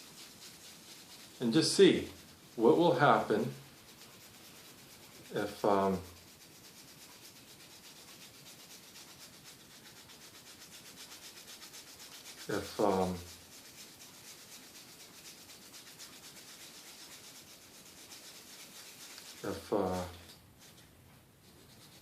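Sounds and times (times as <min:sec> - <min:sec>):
scratchy scrubbing strokes: 0:00.0 - 0:20.8, 0:21.4 - 0:22.0.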